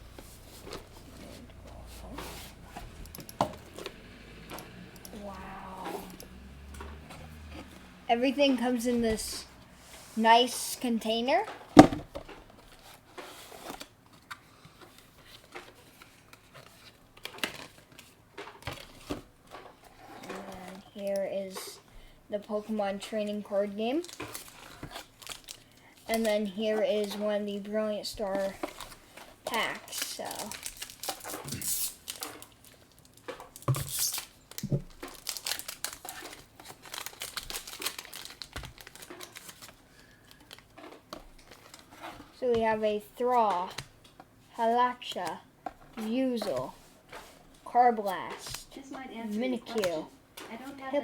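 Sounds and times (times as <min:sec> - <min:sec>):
foil wrapper crinkling: 0:05.2 - 0:05.8, 0:23.9 - 0:27.2, 0:28.3 - 0:42.0.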